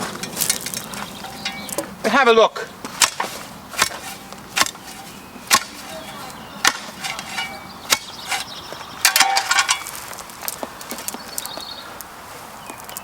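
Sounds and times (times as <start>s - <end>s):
hand tool chopping into gravelly soil: 2.8s - 10.0s.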